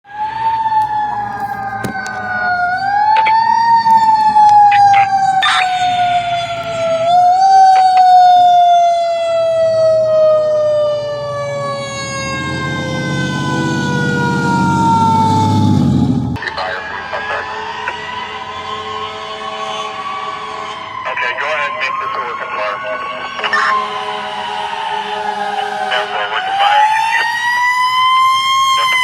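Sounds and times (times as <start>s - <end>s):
fire engine siren wailing: 0.0s - 29.0s
diesel engine rumble: 10.6s - 17.2s.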